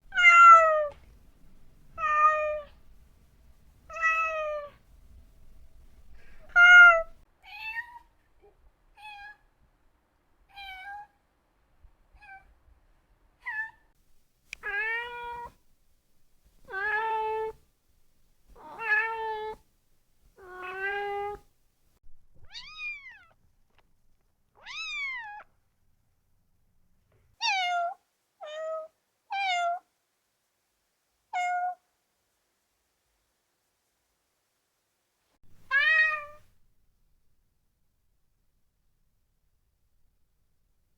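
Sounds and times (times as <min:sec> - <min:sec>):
cat meowing: 0:00.1 - 0:01.0, 0:02.0 - 0:02.8, 0:03.9 - 0:04.8, 0:06.4 - 0:08.1, 0:10.5 - 0:11.1, 0:12.1 - 0:12.5, 0:14.6 - 0:15.6, 0:16.7 - 0:17.6, 0:18.6 - 0:19.6, 0:20.4 - 0:21.4, 0:22.4 - 0:23.4, 0:24.6 - 0:25.5, 0:27.4 - 0:29.8, 0:31.3 - 0:31.8, 0:35.6 - 0:36.5.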